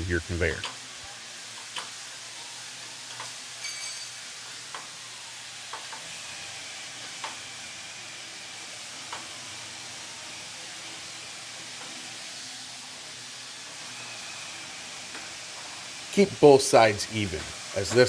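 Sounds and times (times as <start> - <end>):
short metallic ring: 3.6 - 4.2.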